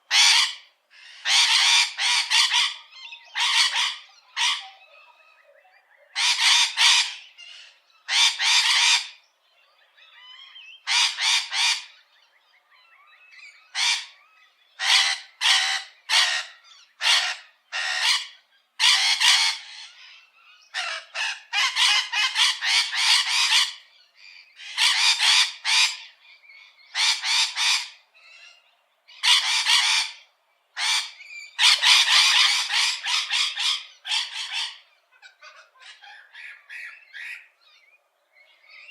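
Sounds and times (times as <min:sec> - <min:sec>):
bird giving harsh calls: 0:00.0 - 0:05.2, 0:06.0 - 0:09.2, 0:13.4 - 0:37.9.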